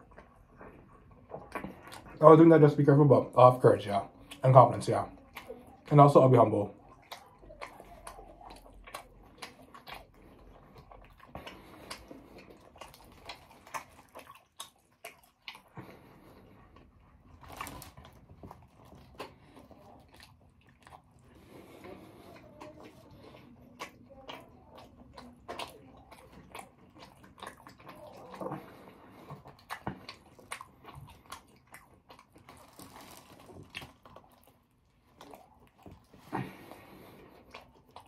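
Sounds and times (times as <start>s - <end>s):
wet mouth clicks: 0.0s - 2.2s, 6.8s - 34.5s
chewing and biting sandwich: 0.0s - 38.0s.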